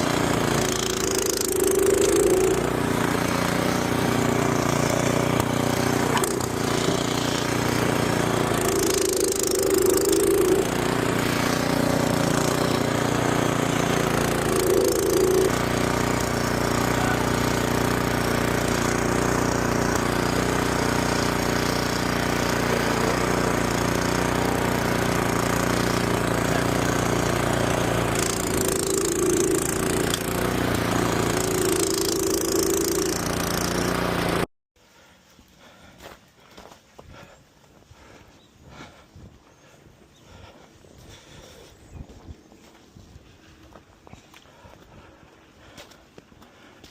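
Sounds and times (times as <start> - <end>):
snowblower engine running: 0.0 - 34.5.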